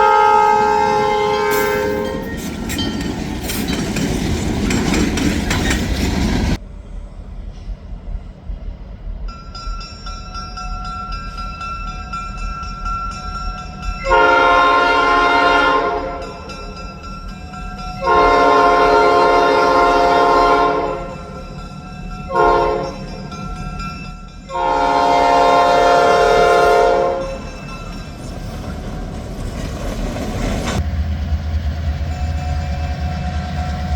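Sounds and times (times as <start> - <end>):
locomotive air horn blasts: 0.0 - 2.3, 14.0 - 16.4, 18.0 - 21.2, 22.3 - 23.0, 24.5 - 27.4
low locomotive rumble: 0.0 - 33.9.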